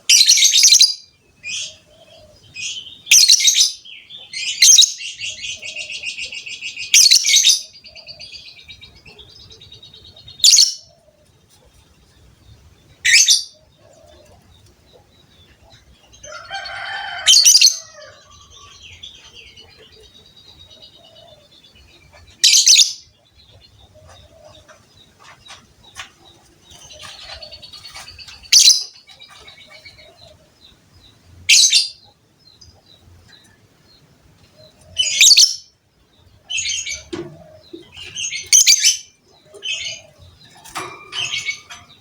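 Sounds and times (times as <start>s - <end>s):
bird twittering chatter: 36.4s - 42.0s.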